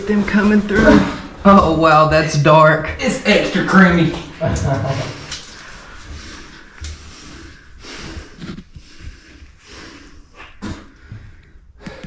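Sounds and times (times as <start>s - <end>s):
person breathing hard: 5.8s - 12.0s.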